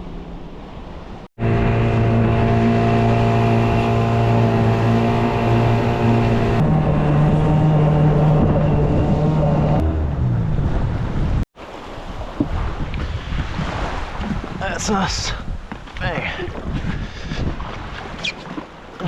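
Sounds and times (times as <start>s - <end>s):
outboard motor running: 1.4s - 11.4s.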